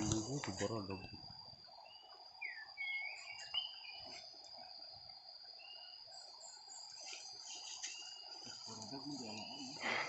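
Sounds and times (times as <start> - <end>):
high-pitched insect drone: 0.0 - 10.0
lower insect hum: 0.0 - 10.0
whistled bird calls: 1.8 - 4.2.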